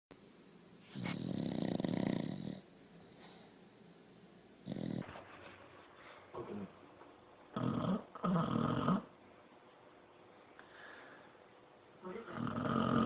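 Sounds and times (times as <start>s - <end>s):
dog snoring: 0.9s - 2.7s, 4.6s - 5.1s, 7.5s - 9.1s, 12.1s - 13.0s.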